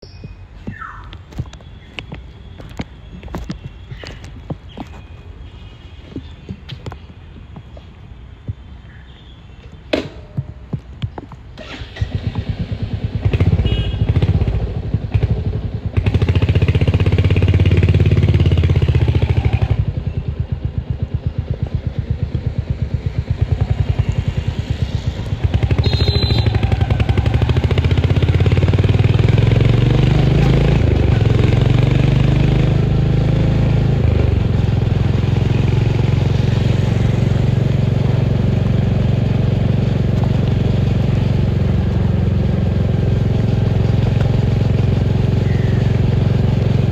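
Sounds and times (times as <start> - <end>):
motorcycle engine thumping: 9.7 - 16.2.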